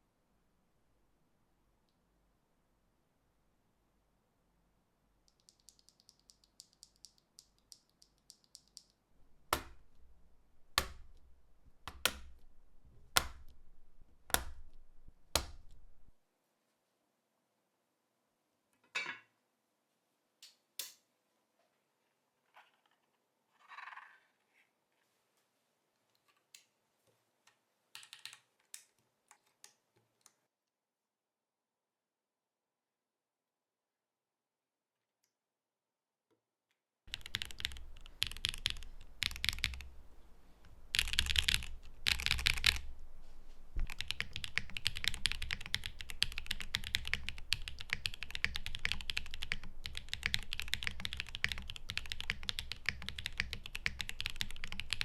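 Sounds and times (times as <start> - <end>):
light keyboard key presses: 37.1 - 40.0, 40.7 - 42.9, 43.8 - 55.0
loud heavy keystrokes: 40.9 - 42.8.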